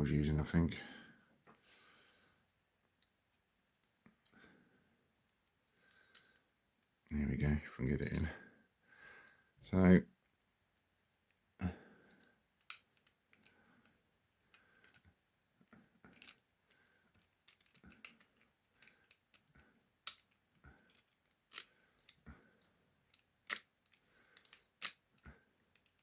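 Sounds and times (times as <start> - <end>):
lock pick clicking and scraping: 12.2 - 15.1, 16.1 - 26.0.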